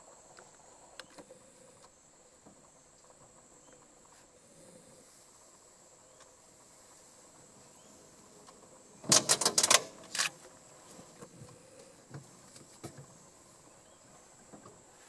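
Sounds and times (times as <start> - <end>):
high insect drone: 0.0 - 15.0
sharp clicks: 9.1 - 10.4.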